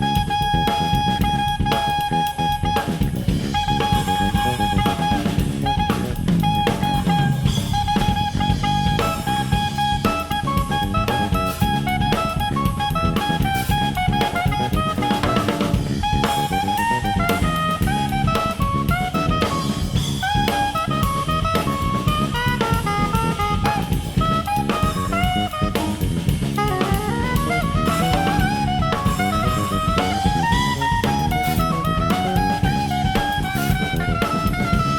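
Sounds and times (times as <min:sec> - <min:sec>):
busy drumming on drum kit: 0:00.0 - 0:34.9
electric bass: 0:00.0 - 0:34.9
saxophone: 0:00.0 - 0:34.9.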